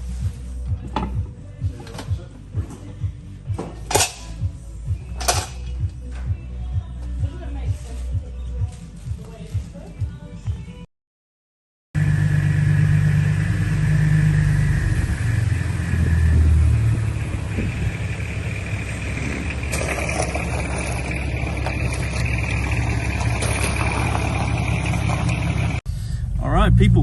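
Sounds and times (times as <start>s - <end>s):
car engine running: 12.0s - 27.0s.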